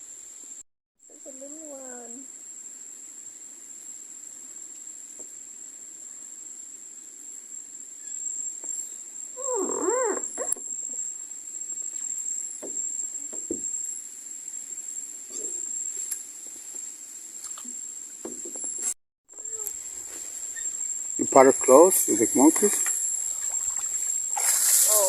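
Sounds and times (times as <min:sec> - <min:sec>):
high-pitched insect drone: 0:07.3 - 0:17.6, 0:19.4 - 0:25.0.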